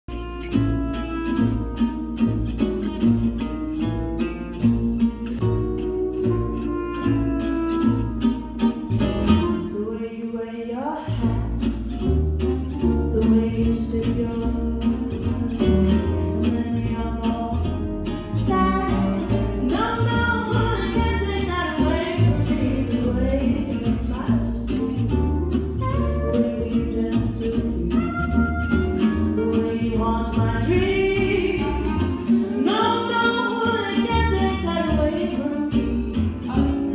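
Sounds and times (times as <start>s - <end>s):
walking bass line: 0.0s - 9.7s, 11.2s - 36.9s
strummed acoustic guitar: 0.1s - 10.1s, 11.1s - 36.9s
person singing: 12.7s - 36.9s.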